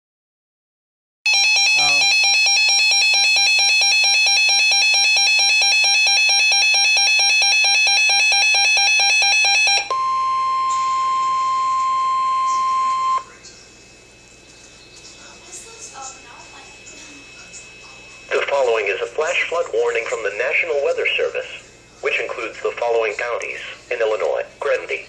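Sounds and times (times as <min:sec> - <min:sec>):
rapid shrill alarm beeping: 0:01.3 - 0:13.3, 0:15.4 - 0:19.6
steady warning alarm tone: 0:01.3 - 0:13.3, 0:14.8 - 0:21.6.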